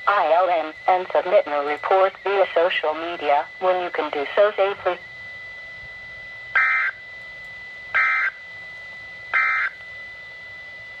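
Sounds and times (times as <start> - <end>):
buzzing electronic data bursts: 6.5 - 7.0, 8.0 - 8.4, 9.3 - 9.8.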